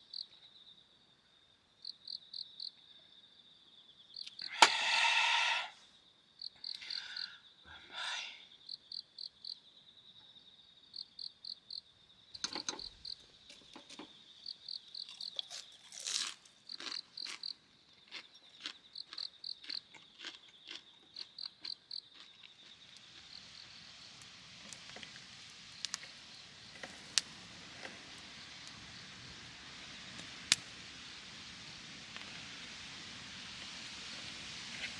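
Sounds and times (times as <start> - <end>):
crickets chirping: 0.0 - 34.9
sharp clicks and crackles: 30.2 - 30.7.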